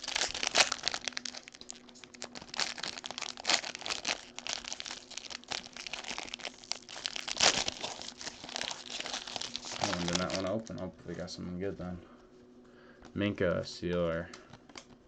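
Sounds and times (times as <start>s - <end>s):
wrapper ripping: 0.0s - 10.8s
wrapper crinkling: 0.0s - 10.9s.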